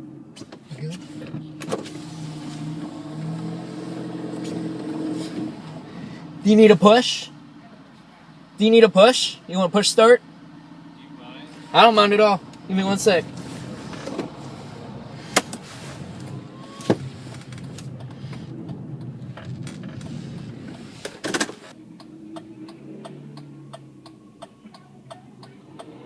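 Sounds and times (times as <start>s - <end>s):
hazard flasher relay ticking: 21.7s - 26.0s.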